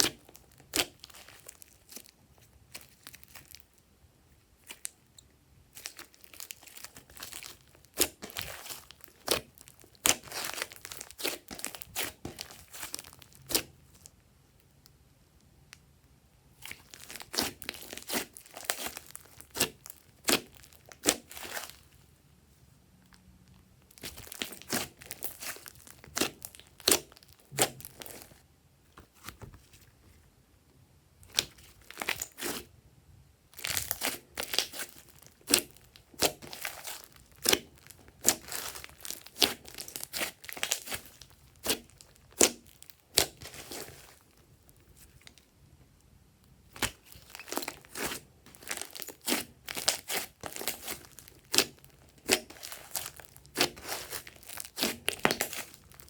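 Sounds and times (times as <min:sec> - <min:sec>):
slime squeezed by hand: 0:46.7 - 0:56.0.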